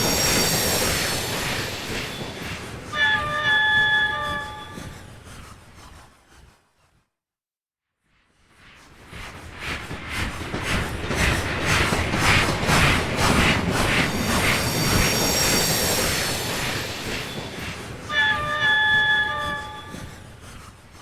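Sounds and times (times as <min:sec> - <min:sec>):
many-toned train whistle: 0:00.0 - 0:05.1, 0:14.1 - 0:20.4
steam locomotive exhaust chuffing: 0:00.0 - 0:05.9, 0:09.3 - 0:21.0
high ringing tones: 0:14.1 - 0:20.0.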